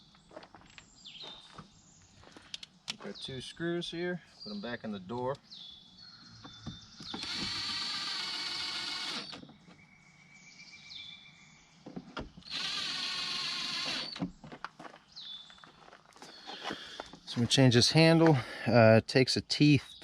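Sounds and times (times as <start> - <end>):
power driver driving screws: 7.0 - 9.4, 12.4 - 14.3.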